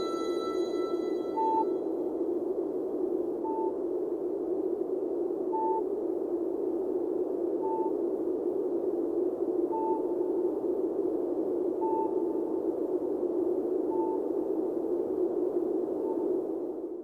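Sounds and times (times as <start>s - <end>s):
short electronic beep: 0.0s - 1.8s.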